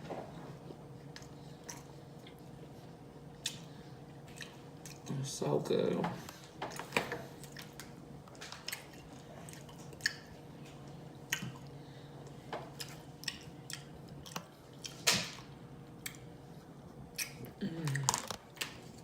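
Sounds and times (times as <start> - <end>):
person chewing food with smacking: 0.4 - 5.2, 6.2 - 19.0.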